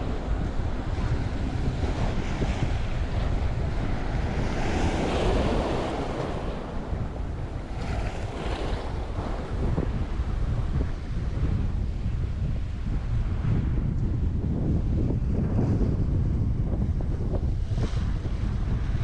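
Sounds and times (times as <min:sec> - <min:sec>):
sea waves washing and splashing: 0:00.0 - 0:11.0
wind buffeting microphone: 0:00.0 - 0:19.0.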